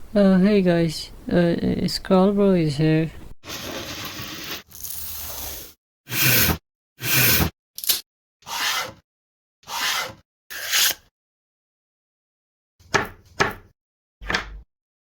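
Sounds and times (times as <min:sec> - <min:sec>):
scraping strokes on wood: 0:06.1 - 0:07.5, 0:08.4 - 0:09.0, 0:09.7 - 0:11.0.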